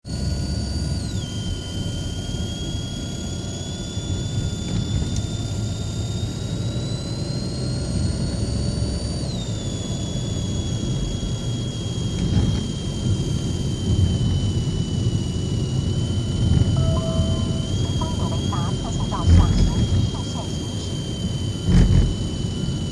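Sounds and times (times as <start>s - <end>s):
moving car rumble: 15.5s - 22.3s.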